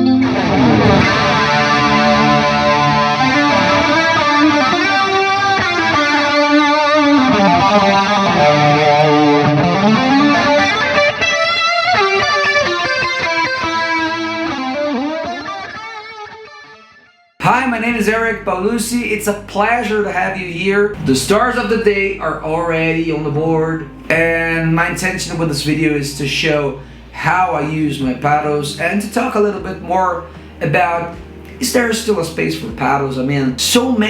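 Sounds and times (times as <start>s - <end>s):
overdriven electric guitar lead: 0.0s - 20.0s.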